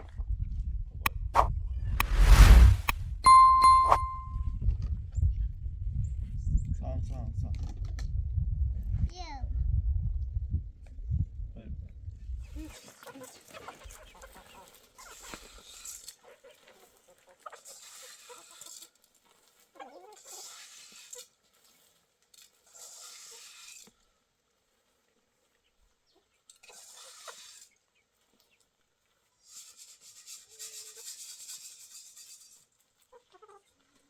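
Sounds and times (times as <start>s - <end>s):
rustling or hissing noise: 2.0s - 4.2s.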